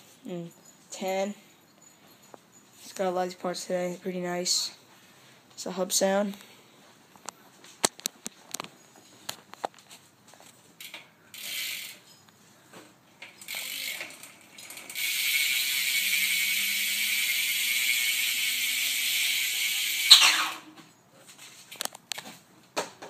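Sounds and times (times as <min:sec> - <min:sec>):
bicycle hub ratcheting: 0:10.8 - 0:12.1, 0:13.2 - 0:20.7.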